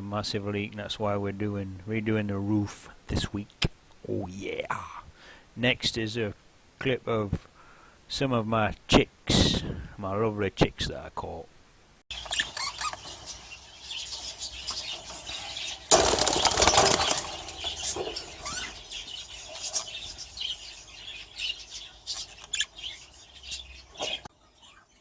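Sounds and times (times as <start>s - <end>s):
budgerigars chirping: 12.1s - 24.3s
wing flapping: 14.7s - 20.2s.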